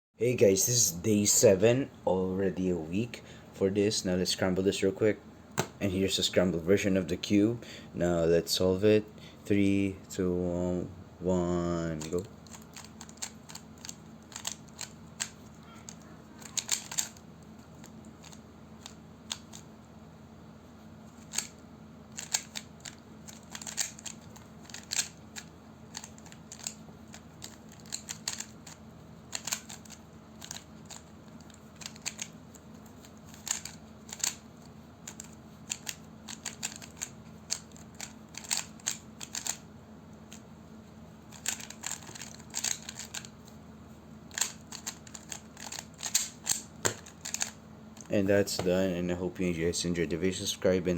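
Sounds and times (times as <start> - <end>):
puzzle cube clicking: 12.0 - 17.2, 17.8 - 19.6, 22.2 - 32.4, 33.0 - 34.4, 35.0 - 39.6, 41.3 - 43.3, 44.3 - 48.1.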